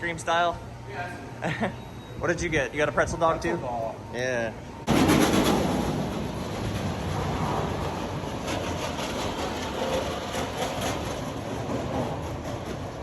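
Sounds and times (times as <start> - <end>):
roller coaster rolling on track: 4.8 - 13.0.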